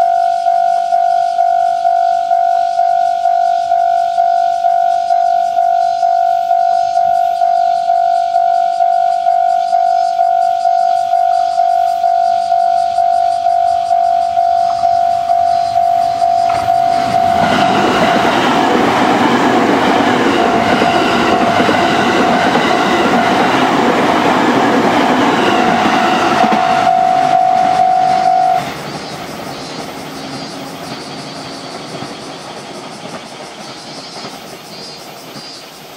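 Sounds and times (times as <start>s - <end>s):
level crossing warning alarm: 0.0s - 34.4s
train wheels clacking on rail joints: 12.8s - 35.9s.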